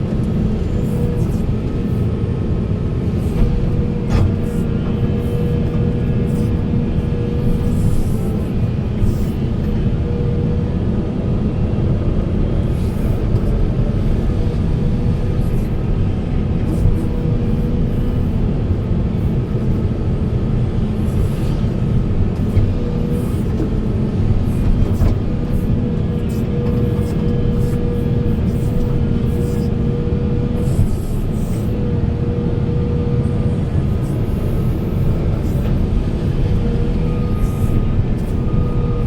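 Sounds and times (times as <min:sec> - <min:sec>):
hydraulic whine: 0:00.0 - 0:10.6, 0:12.4 - 0:39.0
excavator diesel engine running: 0:00.0 - 0:39.0.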